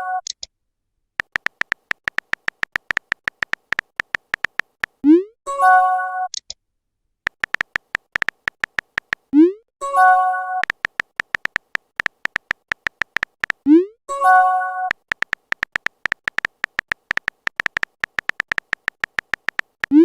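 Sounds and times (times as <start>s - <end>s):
phone typing ticks: 1.2s - 5.0s, 7.3s - 9.3s, 10.6s - 13.7s, 14.9s - 20.0s.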